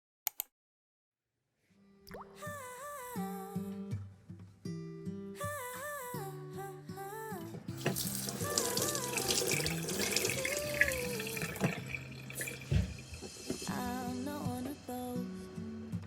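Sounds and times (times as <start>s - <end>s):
soft background music: 5.3s - 16.0s
tap water running into sink: 7.8s - 13.8s.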